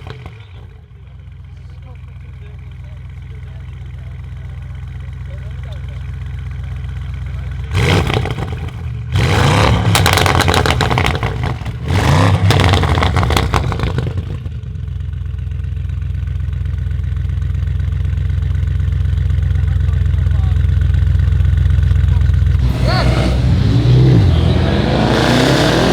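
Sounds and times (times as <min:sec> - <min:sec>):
car engine revving: 0:07.4 - 0:14.5, 0:20.0 - 0:25.9
exhaust crackles and pops: 0:09.6 - 0:14.5.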